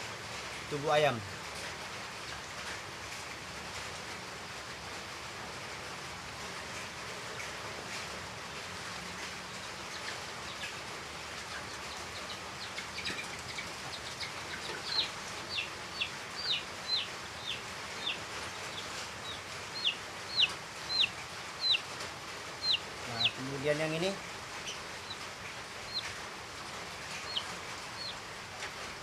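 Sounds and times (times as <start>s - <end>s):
steady hiss: 0.0s - 29.0s
chick peeping: 9.2s - 28.8s.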